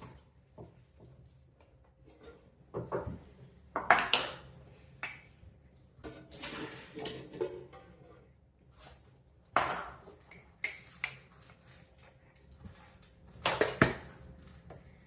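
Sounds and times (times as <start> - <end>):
dishes knocking and clinking: 2.2 - 4.4, 6.0 - 8.2, 9.4 - 12.1, 12.7 - 15.0.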